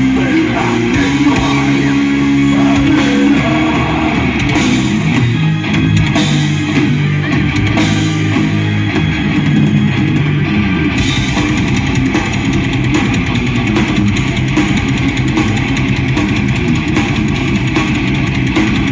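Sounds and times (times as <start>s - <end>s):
distorted electric guitars: 0.0s - 18.9s
drum kit: 0.0s - 18.9s
rapid bass drum strokes: 0.0s - 18.9s.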